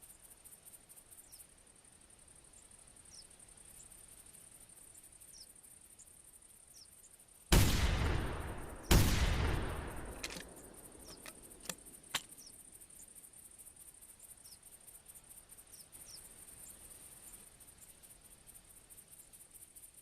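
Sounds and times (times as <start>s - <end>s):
crickets chirring: 0.0s - 20.0s
shotgun shots echoing: 7.5s - 12.3s
sharp clicks: 8.9s - 12.5s.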